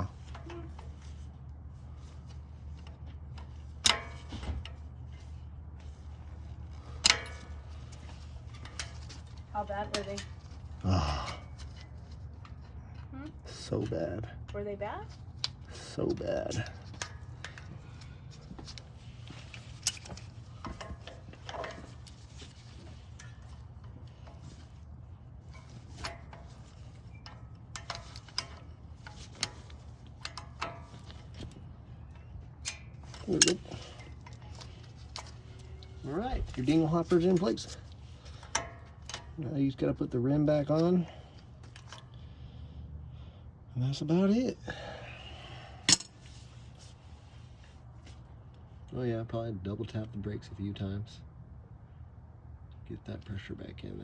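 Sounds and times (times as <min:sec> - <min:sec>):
metal clinks on brake caliper: 0:02.0 - 0:06.0, 0:06.7 - 0:13.1, 0:16.5 - 0:24.8, 0:25.4 - 0:39.5, 0:45.8 - 0:46.4.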